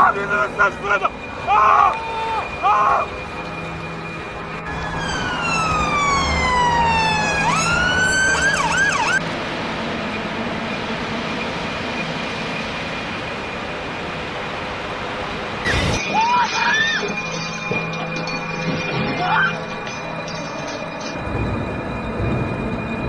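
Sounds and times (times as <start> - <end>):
emergency vehicle siren: 0.0 - 17.2.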